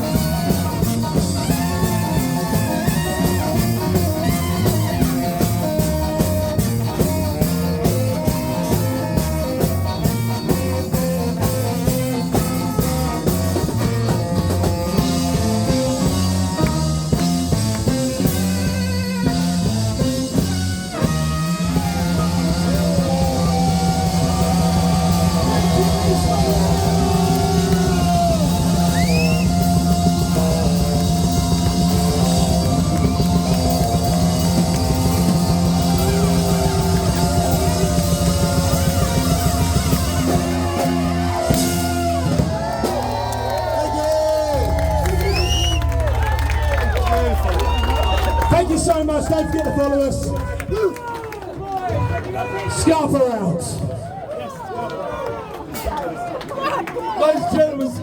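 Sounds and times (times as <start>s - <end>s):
ska band playing: 0.0s - 51.2s
sustained band chord: 14.9s - 42.5s.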